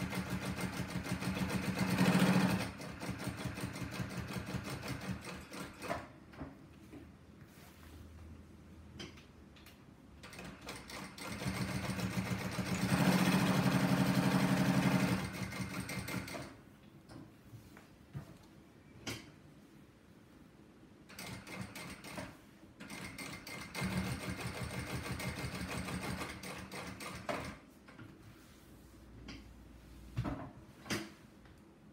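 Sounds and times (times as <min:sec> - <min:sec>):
sewing machine stitching leather: 0:00.0 - 0:06.2, 0:10.2 - 0:16.6, 0:21.1 - 0:27.6.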